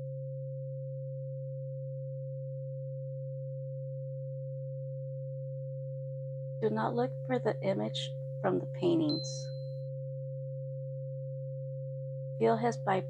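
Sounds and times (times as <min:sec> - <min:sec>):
low sine tone drone: 0:00.0 - 0:13.0
higher pure tone: 0:06.6 - 0:09.8.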